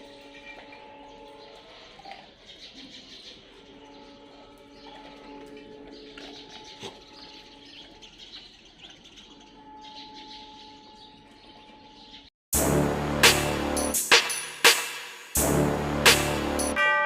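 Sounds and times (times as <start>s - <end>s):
electronic music with heavy beat: 12.6s - 17.0s.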